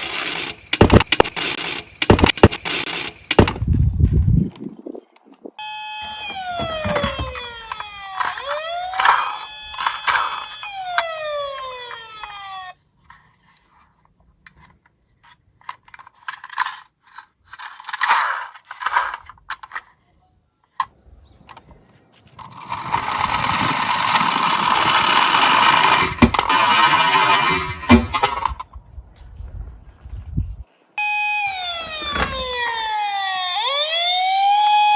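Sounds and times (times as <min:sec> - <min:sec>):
toy cars clicking and clattering: 0:00.0 - 0:03.6, 0:06.8 - 0:12.7, 0:14.4 - 0:20.0, 0:22.3 - 0:28.7
siren sliding down in pitch: 0:05.6 - 0:12.8, 0:31.0 - 0:34.9.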